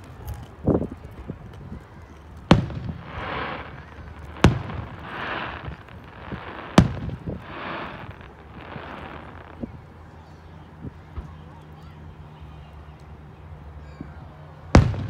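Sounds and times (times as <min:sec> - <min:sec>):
firework crackle: 0:00.0 - 0:10.0, 0:14.8 - 0:15.0
firework sharp bangs: 0:02.4 - 0:09.8, 0:14.8 - 0:15.0
firework dull thump: 0:02.5 - 0:09.7.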